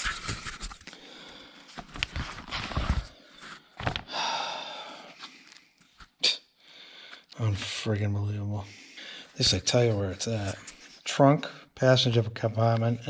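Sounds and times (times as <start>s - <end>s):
paper pages rustling: 0.0s - 1.0s, 1.7s - 4.1s
short sharp breaths: 6.6s - 7.4s.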